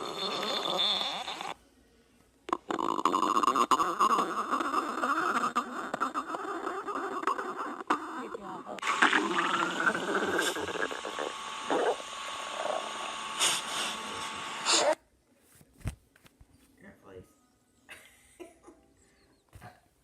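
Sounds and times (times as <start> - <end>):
stomach growling: 0.0 - 1.6, 2.5 - 13.1.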